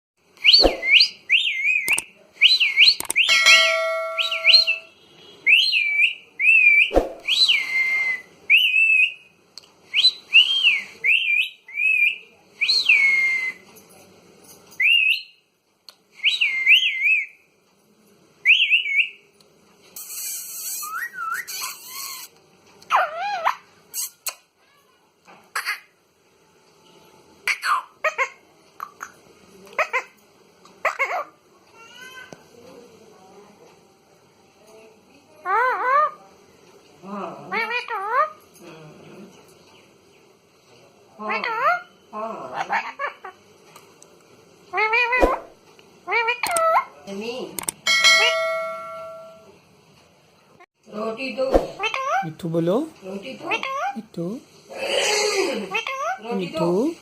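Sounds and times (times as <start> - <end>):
parrot whistling: 0.4 - 9.2, 20.0 - 22.3
parrot clicks: 3.0 - 3.3.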